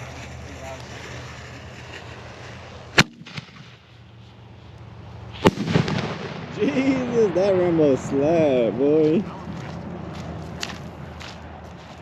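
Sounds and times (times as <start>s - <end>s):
firework shell breaking: 0.0s - 3.9s
firework launch bang: 0.5s - 3.9s, 5.3s - 6.7s.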